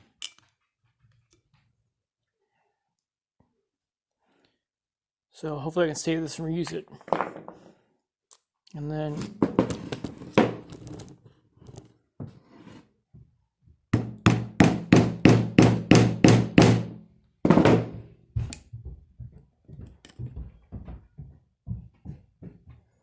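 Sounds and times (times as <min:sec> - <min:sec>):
hammer strikes on metal: 0:14.0 - 0:17.9.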